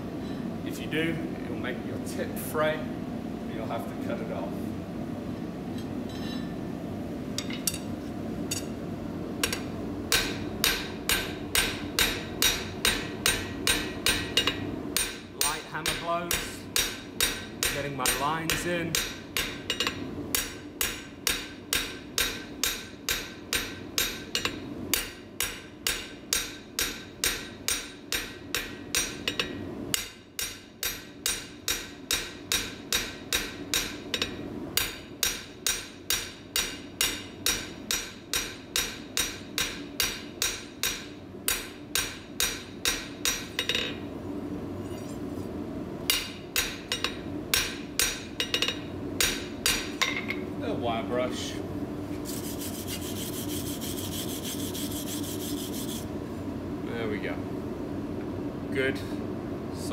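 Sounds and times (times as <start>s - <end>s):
hammer striking hot steel on anvil: 8.5s - 8.8s, 9.4s - 44.0s, 46.0s - 50.4s.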